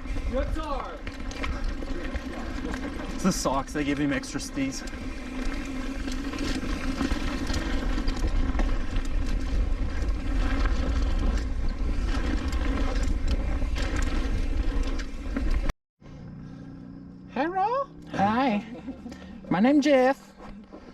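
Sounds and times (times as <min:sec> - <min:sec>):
wind buffeting microphone: 0:00.0 - 0:03.3
bike tyres and frame rattling: 0:00.0 - 0:15.7.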